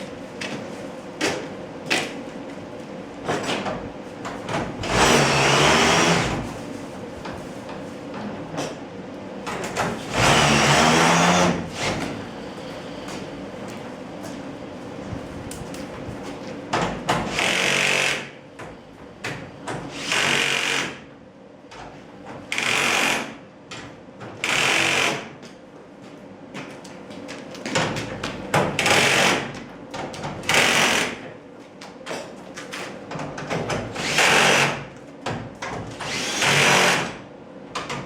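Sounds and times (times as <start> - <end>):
power drill driving screws: 36.0 - 37.0.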